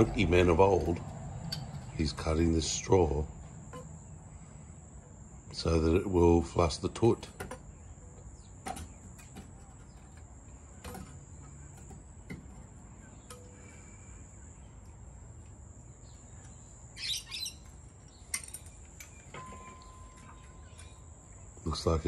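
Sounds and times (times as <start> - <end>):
birds chirping: 0.0 - 22.0.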